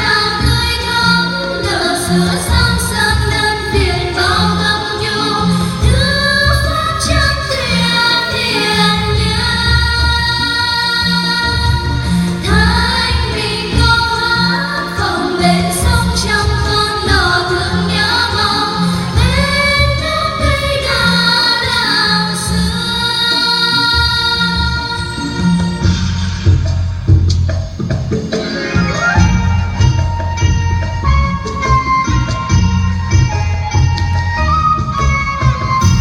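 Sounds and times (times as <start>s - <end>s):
woman singing: 0.0s - 25.8s
music with steady beat: 0.0s - 36.0s.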